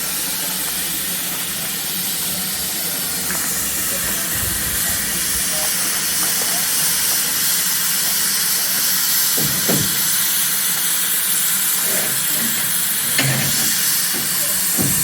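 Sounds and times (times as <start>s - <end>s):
steam locomotive hissing: 0.0s - 15.0s
short knocks: 13.2s - 15.0s.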